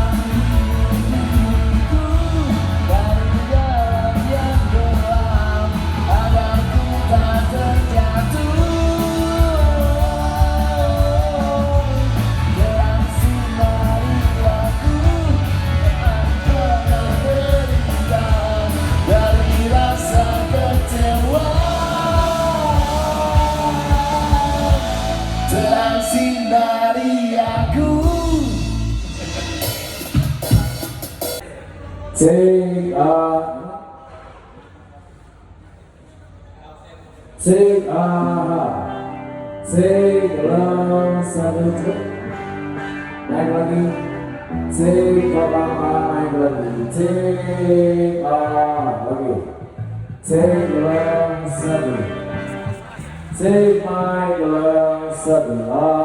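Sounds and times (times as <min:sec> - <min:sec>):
live rock band playing: 0:00.0 - 0:31.4, 0:38.8 - 0:48.0, 0:50.3 - 0:53.8
lead vocal singing: 0:00.0 - 0:33.9, 0:37.4 - 0:56.0.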